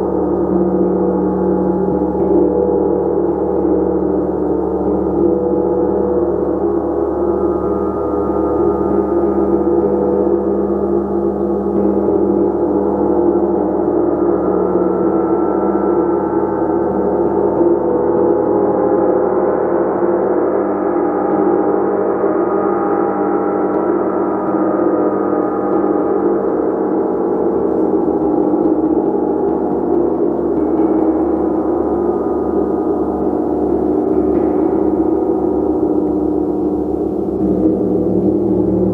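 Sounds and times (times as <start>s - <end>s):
gong ringing: 32.2s - 38.9s.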